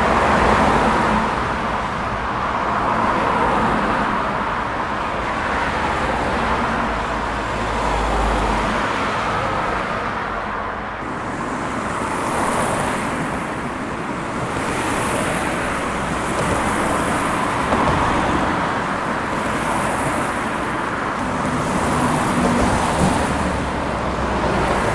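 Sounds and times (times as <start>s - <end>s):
cars driving past: 0.0s - 24.9s.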